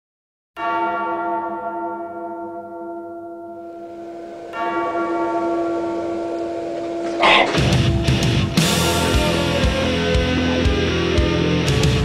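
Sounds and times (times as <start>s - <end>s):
bell-like tone ringing: 2.2s - 9.2s.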